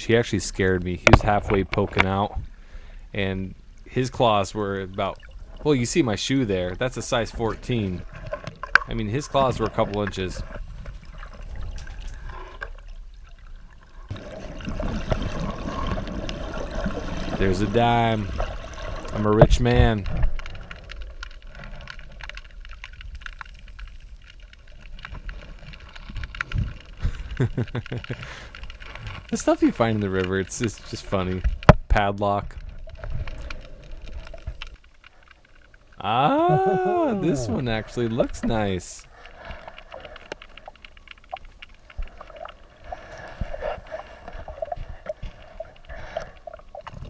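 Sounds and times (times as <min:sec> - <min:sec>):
underwater rumble of moving water: 0:00.0 - 0:47.0
small scattered clicks: 0:19.0 - 0:31.8, 0:32.5 - 0:36.0, 0:38.0 - 0:47.0.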